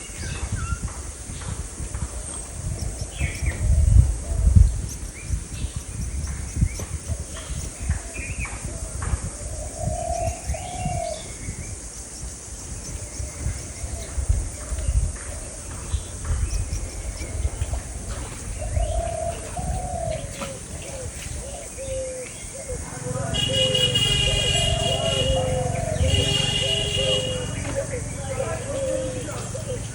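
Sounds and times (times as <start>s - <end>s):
small birds chirping: 0.0s - 29.9s
dove cooing: 7.0s - 11.3s, 17.4s - 29.9s.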